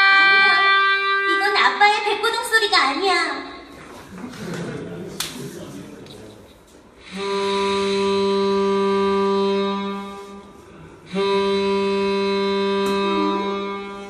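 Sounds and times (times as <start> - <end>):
low reed instrument blasts: 11.1 - 14.0.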